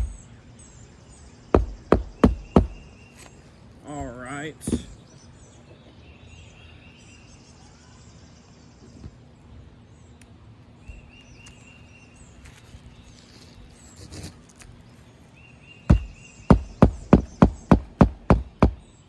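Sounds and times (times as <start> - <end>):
hatchet striking roofing nail: 0.0 - 0.2, 1.6 - 3.3, 4.0 - 5.0, 15.9 - 18.9.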